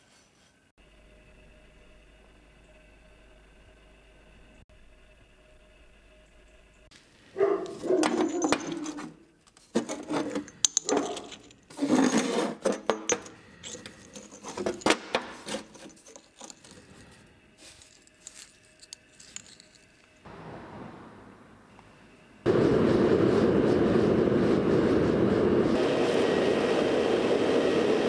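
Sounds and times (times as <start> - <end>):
scraping and rubbing: 7.6 - 12.9, 13.6 - 20.2.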